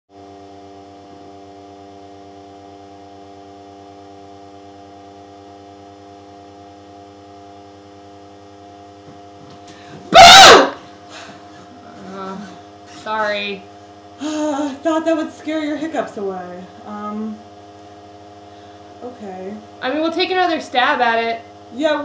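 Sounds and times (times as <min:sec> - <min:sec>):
steady electrical hum: 0:00.1 - 0:22.0
person screaming: 0:10.1 - 0:10.8.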